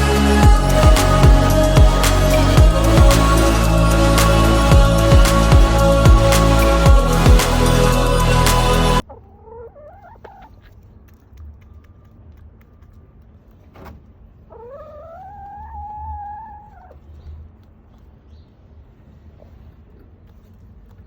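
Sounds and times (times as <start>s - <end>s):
chicken calling: 14.5s - 17.0s.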